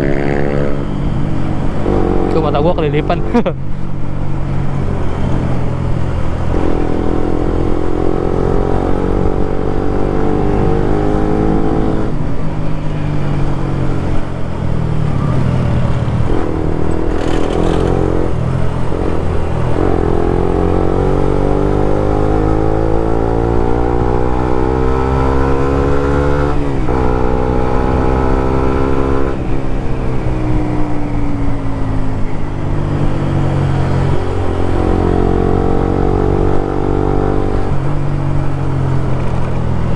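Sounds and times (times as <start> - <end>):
motorcycle engine revving: 0.0 - 3.4, 15.1 - 30.4, 32.8 - 37.8.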